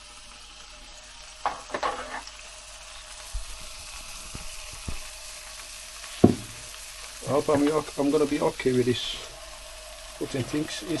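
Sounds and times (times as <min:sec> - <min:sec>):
steak sizzling in oil: 0:00.0 - 0:11.0
knocks against pan: 0:06.2 - 0:06.6.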